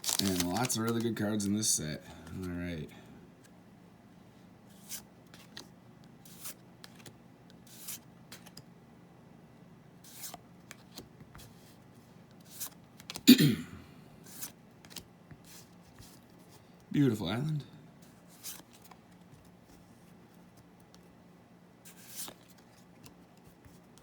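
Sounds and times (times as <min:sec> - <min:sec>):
trading cards rustling and flicking: 0:00.0 - 0:02.6, 0:04.7 - 0:08.6, 0:10.0 - 0:13.3, 0:14.2 - 0:16.6, 0:18.0 - 0:21.1, 0:21.9 - 0:24.0.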